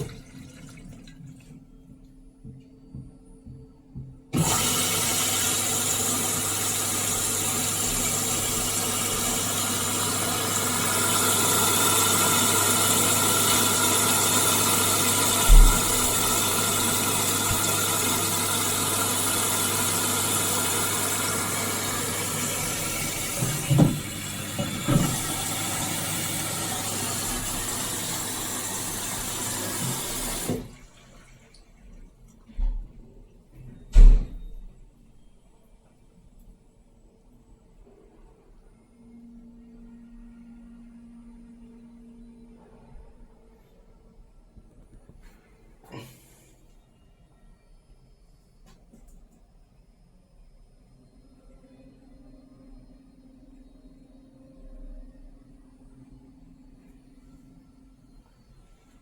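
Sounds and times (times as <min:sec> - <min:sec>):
washing machine drain pump humming: 0:00.0 - 0:34.6
water rushing through pump: 0:04.4 - 0:32.0
knock: 0:23.4 - 0:25.3.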